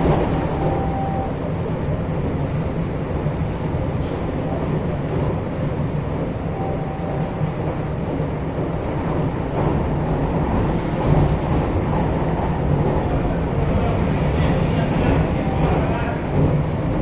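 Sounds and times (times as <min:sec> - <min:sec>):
electric train rumbling: 0:00.0 - 0:17.0.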